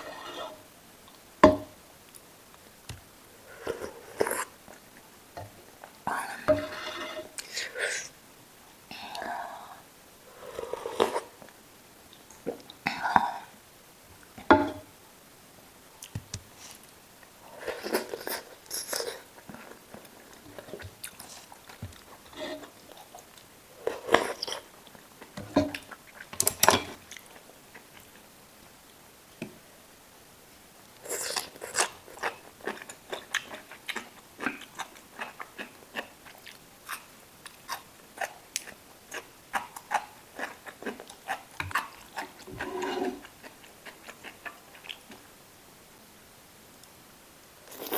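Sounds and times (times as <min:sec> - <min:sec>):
person chewing: 0:17.7 - 0:25.0, 0:31.0 - 0:45.2.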